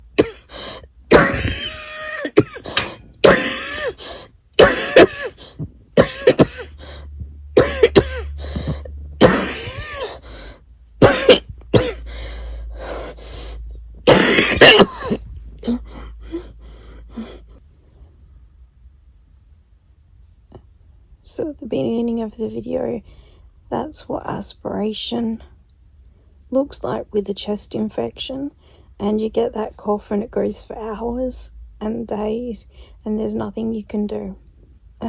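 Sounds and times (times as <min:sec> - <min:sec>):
person coughing: 0:00.2 - 0:00.5, 0:01.1 - 0:04.0, 0:04.6 - 0:06.8, 0:07.6 - 0:10.2, 0:11.0 - 0:12.1, 0:14.1 - 0:15.9.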